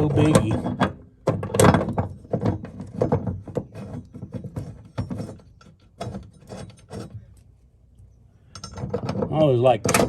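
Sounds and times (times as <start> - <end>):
metal bolts clicking and knocking: 8.5 - 10.0.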